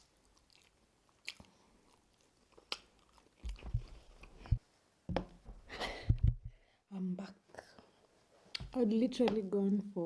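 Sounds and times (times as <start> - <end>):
person chewing food: 0.0 - 4.6.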